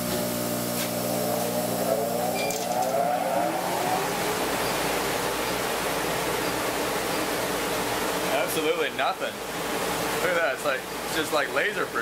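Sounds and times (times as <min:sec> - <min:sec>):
rising whine: 0:00.4 - 0:07.3.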